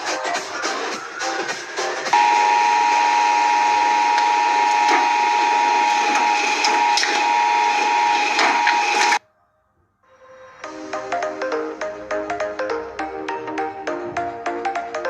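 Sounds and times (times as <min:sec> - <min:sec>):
shredding machine grinding: 0:02.1 - 0:09.2.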